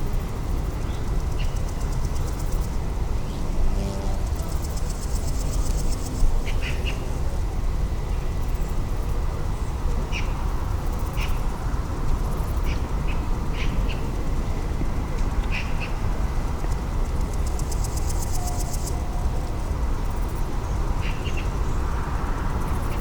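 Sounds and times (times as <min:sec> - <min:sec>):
steady low rumble: 0:00.2 - 0:09.6.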